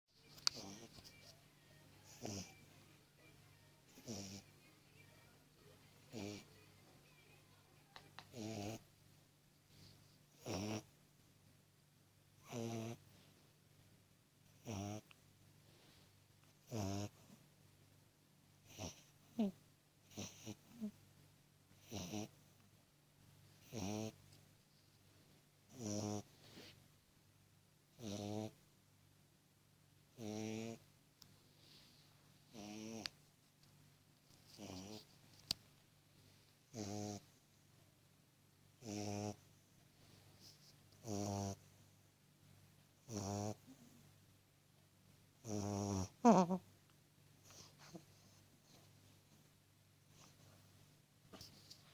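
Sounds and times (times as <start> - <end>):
puppy snoring squeakily: 0.6 - 0.9, 2.0 - 2.7, 3.9 - 4.4, 6.1 - 6.4, 8.3 - 8.8, 10.4 - 10.9, 12.4 - 13.0, 14.6 - 15.0, 16.6 - 17.2, 18.6 - 19.5, 20.1 - 20.9, 21.8 - 22.4, 23.6 - 24.2, 25.7 - 26.3, 28.0 - 28.6, 30.2 - 30.8, 36.7 - 37.2, 38.8 - 39.4, 41.0 - 41.6, 43.1 - 43.8, 45.4 - 46.6.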